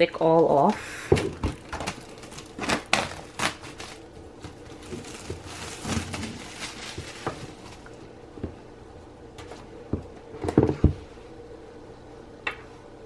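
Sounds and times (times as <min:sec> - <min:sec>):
plastic wrap crinkling: 0:00.6 - 0:08.1.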